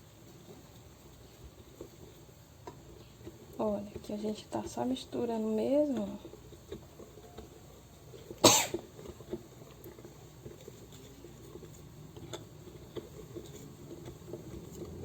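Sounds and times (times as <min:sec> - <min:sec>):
spoon stirring batter in bowl: 0:00.0 - 0:15.0
person coughing: 0:08.4 - 0:08.8.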